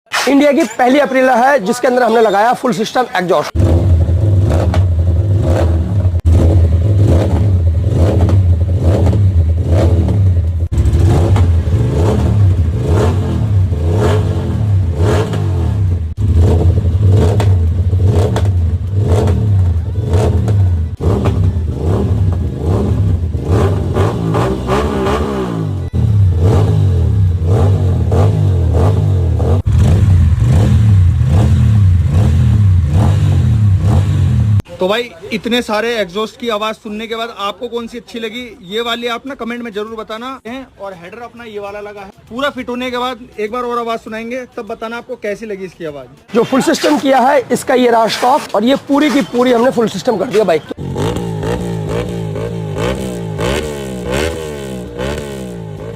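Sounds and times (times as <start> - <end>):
motorcycle engine revving: 3.5 - 34.7, 50.3 - 55.9.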